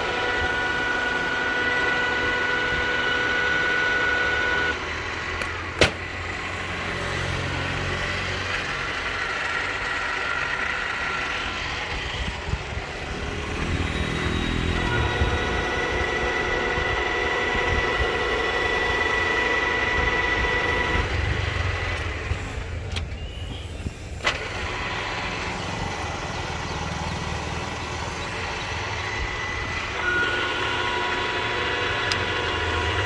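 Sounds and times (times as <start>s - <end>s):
milling machine gear whine: 0.0s - 33.0s
rough machine running noise: 0.0s - 33.0s.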